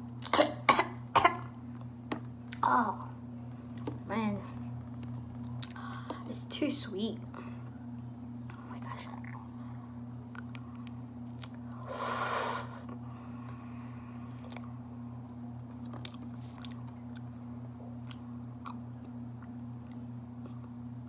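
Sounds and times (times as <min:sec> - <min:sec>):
low hum: 0:00.0 - 0:21.0
chewing honeycomb: 0:10.2 - 0:11.9, 0:14.3 - 0:20.8.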